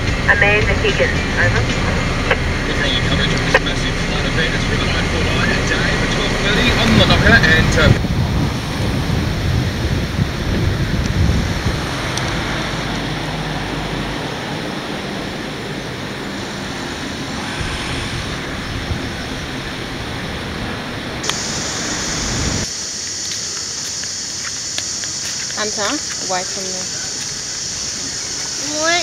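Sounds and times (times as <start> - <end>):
wind buffeting microphone: 1.5 - 22.7
floodwater rushing: 2.0 - 29.0.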